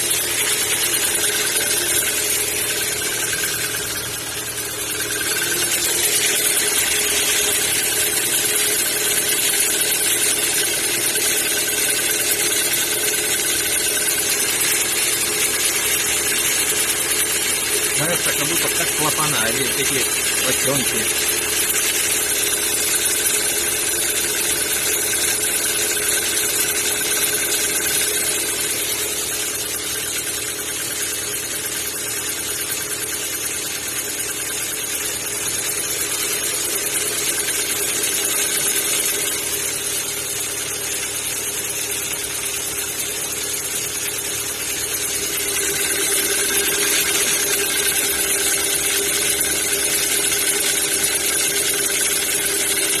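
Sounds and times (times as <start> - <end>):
car engine idling with knock: 0.0 - 53.0
person talking: 17.9 - 21.2.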